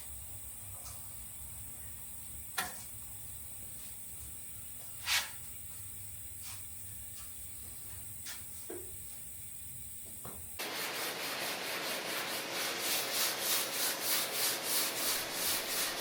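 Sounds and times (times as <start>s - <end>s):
faint steady hiss: 0.0s - 10.8s.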